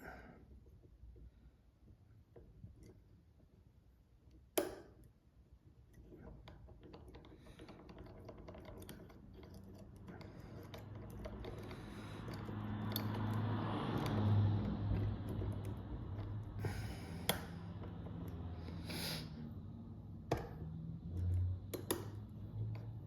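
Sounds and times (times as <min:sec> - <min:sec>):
lock picks ticking and scraping: 0:05.9 - 0:18.9.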